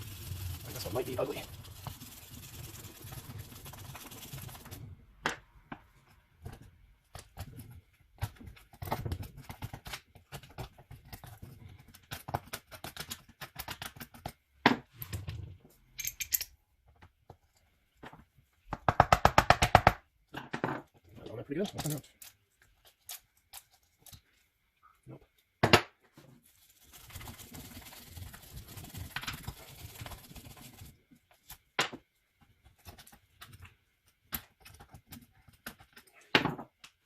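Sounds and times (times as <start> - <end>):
metal parts and tools clinking: 15.9 - 16.6.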